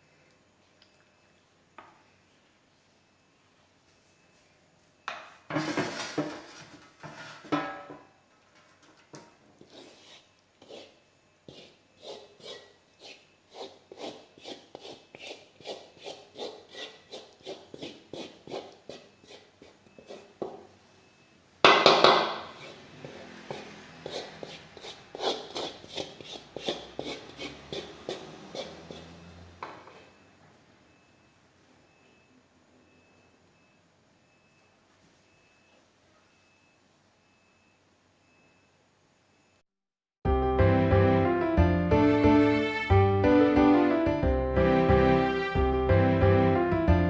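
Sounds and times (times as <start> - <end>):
spatula scraping a pan: 5.5 - 8.0, 9.6 - 20.6, 21.8 - 30.1.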